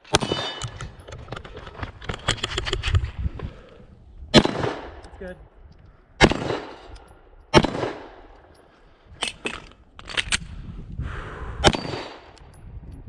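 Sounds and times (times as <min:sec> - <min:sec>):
pistol shots with short echo: 0:07.5 - 0:08.3.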